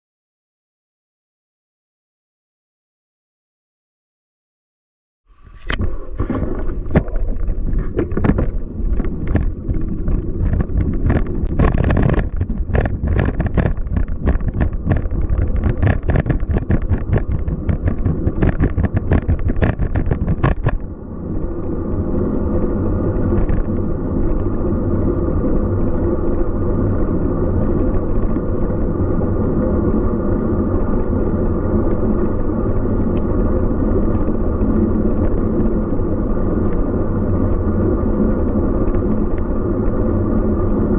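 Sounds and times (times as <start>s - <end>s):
bicycle road rumble: 5.3s - 40.9s
bicycle rattles and knocks: 5.5s - 20.9s, 23.1s - 26.6s, 27.5s - 40.9s.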